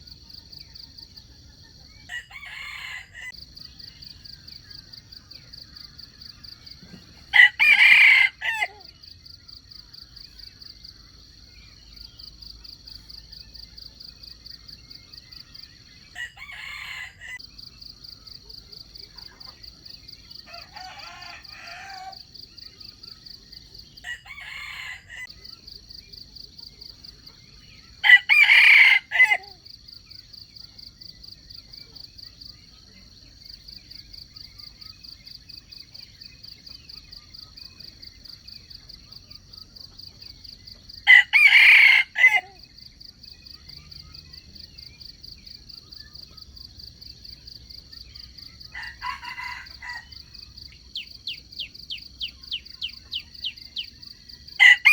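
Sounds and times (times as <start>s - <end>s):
roosters crowing: 2.1s - 3.4s, 6.8s - 8.9s, 16.1s - 17.4s, 20.4s - 22.3s, 24.0s - 25.3s, 28.0s - 29.6s, 41.0s - 42.6s, 48.7s - 50.2s, 54.6s - 54.9s.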